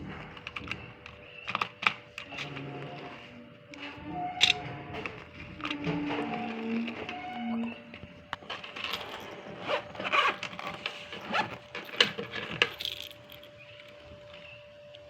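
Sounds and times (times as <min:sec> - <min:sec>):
pouch clicking and rustling: 0:00.3 - 0:02.4, 0:08.3 - 0:14.6.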